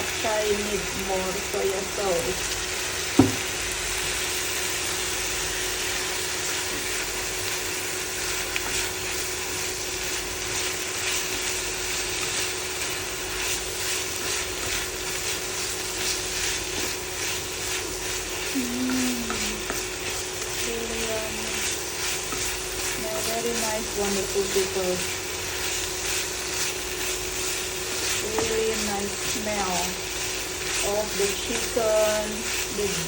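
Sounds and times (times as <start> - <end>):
food sizzling in a pan: 0.0 - 33.0
spatula stirring and scraping: 8.2 - 33.0.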